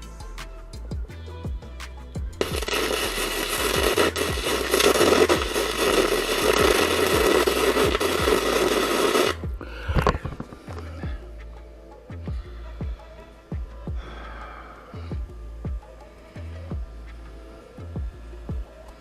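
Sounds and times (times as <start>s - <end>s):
background music with low beat: 0.0s - 19.0s
welding arc crackling: 2.4s - 10.6s.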